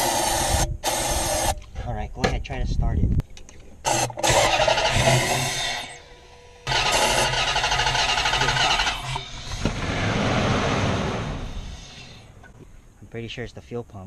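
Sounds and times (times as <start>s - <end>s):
engine cranking on starter: 3.9s - 6.0s, 6.6s - 10.1s.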